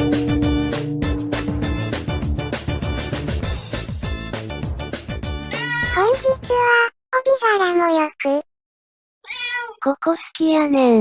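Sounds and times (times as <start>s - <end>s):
background music with drum beat: 0.0s - 5.5s.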